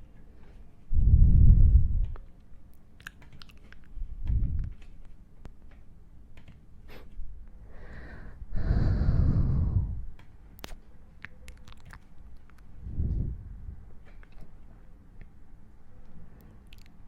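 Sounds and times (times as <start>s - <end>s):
small clicks and taps: 3.1s - 6.6s
breathy whoosh: 7.7s - 10.1s.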